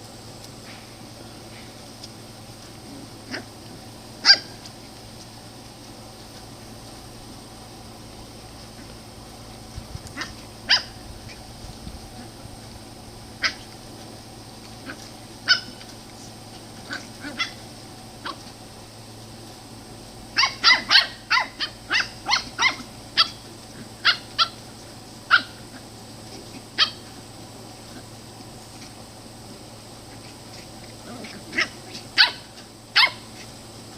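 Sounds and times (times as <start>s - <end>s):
puppies yipping: 2.6s - 5.0s, 8.6s - 12.4s, 13.4s - 18.5s, 20.3s - 29.0s, 30.0s - 33.6s.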